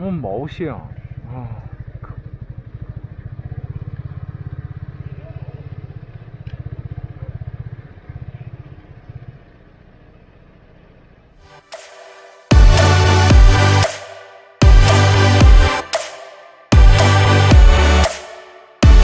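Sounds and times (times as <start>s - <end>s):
motorcycle engine running: 0.0s - 11.4s, 12.5s - 14.0s, 14.6s - 16.0s, 16.7s - 18.2s, 18.8s - 19.0s
music: 11.4s - 19.0s.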